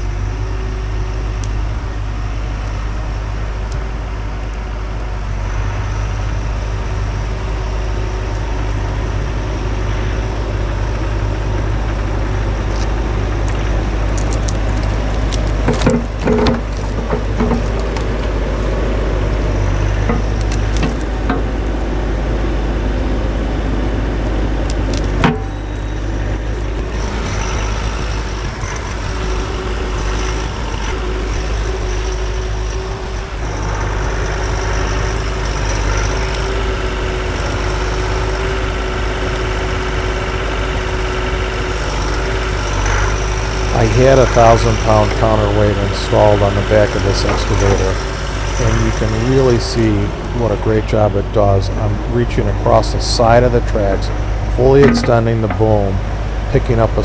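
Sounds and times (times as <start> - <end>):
diesel engine running: 0.0 - 57.0
sharp crack: 54.6 - 56.0
knocks: 54.8 - 55.8.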